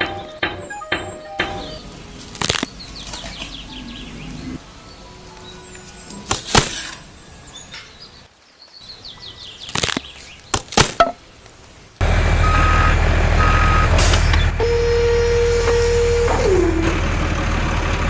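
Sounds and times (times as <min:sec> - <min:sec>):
sharp knocks: 0:00.0 - 0:01.8
heavy vehicle engine running: 0:12.0 - 0:18.0
reversing beeps: 0:12.4 - 0:16.3.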